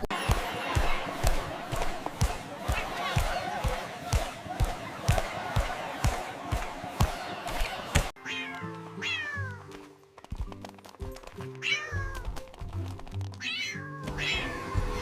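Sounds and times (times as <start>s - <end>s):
cat meows: 11.6s - 12.2s, 13.4s - 14.8s.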